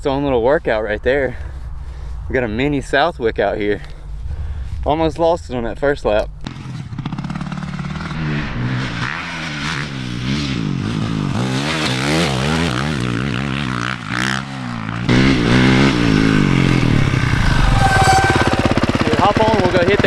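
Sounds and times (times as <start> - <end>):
dirt bike engine revving: 6.4 - 20.0.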